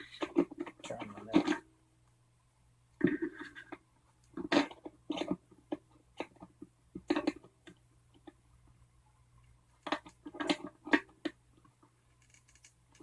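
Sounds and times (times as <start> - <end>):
wrench clicking and scraping: 12.2 - 12.7.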